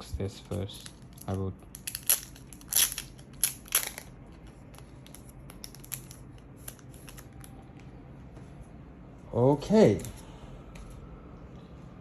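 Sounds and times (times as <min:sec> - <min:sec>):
plastic wrapping crinkling and tearing: 0:00.6 - 0:07.5.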